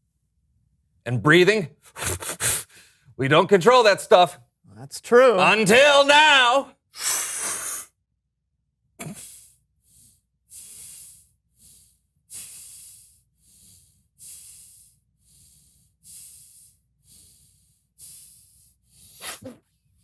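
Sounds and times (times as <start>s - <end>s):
person breathing through the nose: 1.8s - 3.1s, 7.0s - 7.9s, 9.0s - 19.6s.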